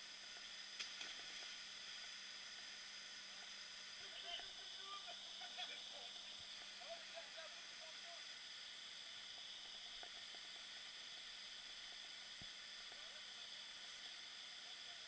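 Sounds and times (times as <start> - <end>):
faint hiss: 0.0 - 15.0
faint ticks: 9.1 - 15.0.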